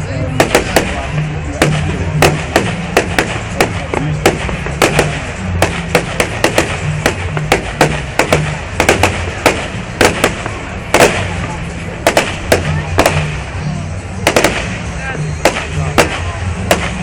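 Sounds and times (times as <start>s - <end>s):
fireworks bangs and cracks: 0.0s - 17.0s
music with stepping bass line: 1.2s - 13.6s.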